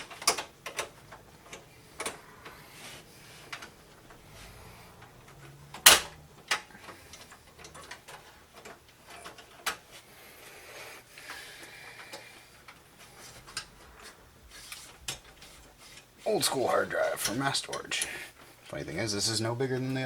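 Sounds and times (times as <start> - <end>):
computer parts clicking and knocking: 0.0 - 2.5, 5.0 - 9.9.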